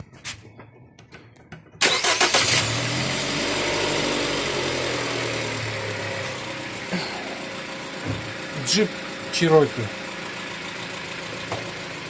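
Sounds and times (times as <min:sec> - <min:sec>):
engine starter cranking: 0:01.8 - 0:03.0
car engine idling: 0:01.8 - 0:12.0.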